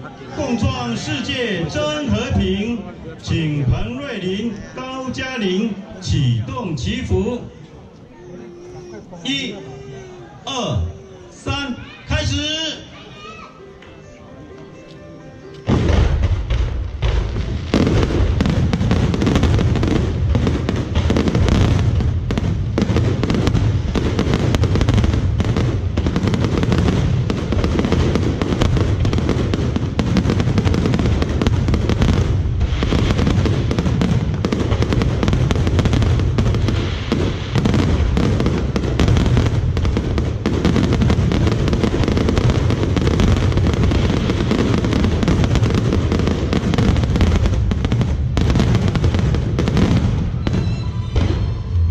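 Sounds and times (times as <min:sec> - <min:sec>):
fireworks bangs and crackling: 0:15.6 - 0:51.9.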